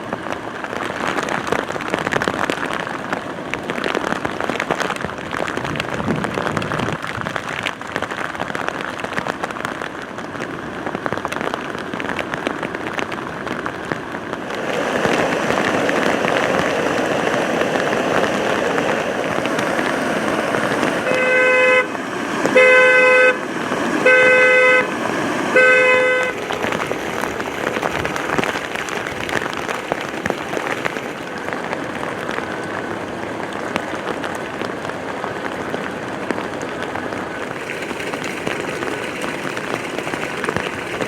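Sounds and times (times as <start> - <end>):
steady rushing noise: 13.7 - 33.3, 33.9 - 41.0
vehicle horn blasts: 21.0 - 23.4, 24.0 - 26.4.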